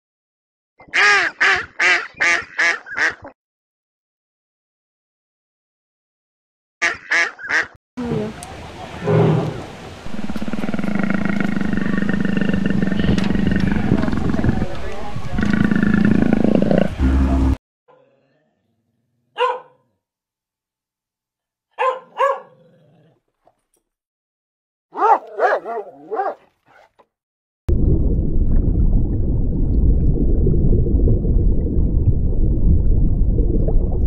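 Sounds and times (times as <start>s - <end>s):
low rumbling noise: 8.0s - 17.6s, 27.7s - 34.0s
dog barking: 19.3s - 20.0s, 21.7s - 22.7s, 24.9s - 27.0s.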